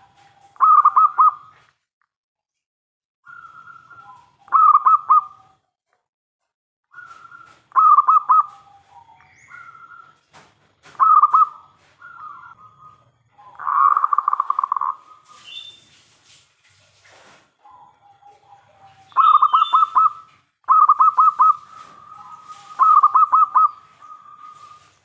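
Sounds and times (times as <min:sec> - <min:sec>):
dove cooing: 0:00.0 - 0:01.6, 0:03.3 - 0:05.6, 0:06.9 - 0:10.1, 0:10.9 - 0:15.4, 0:17.6 - 0:24.9.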